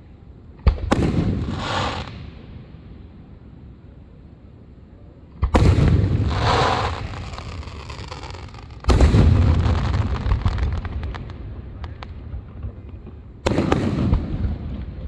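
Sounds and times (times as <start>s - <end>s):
crackling firework pops: 0.6s - 2.3s, 5.4s - 15.0s
firework booms: 0.6s - 2.7s, 5.4s - 15.0s.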